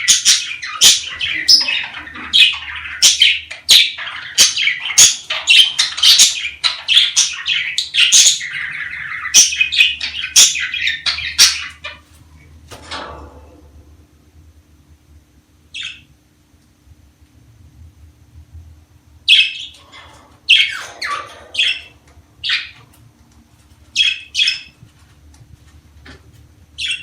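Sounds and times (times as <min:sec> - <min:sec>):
budgerigars chirping: 0:00.0 - 0:12.0, 0:15.7 - 0:16.1, 0:19.2 - 0:23.0, 0:23.9 - 0:24.8, 0:26.8 - 0:27.0.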